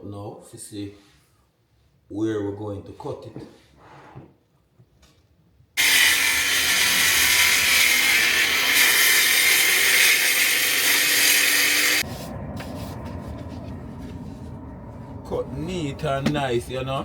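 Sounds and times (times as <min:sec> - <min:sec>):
power saw cutting wood: 0:05.8 - 0:12.0
low rumble: 0:12.0 - 0:17.0.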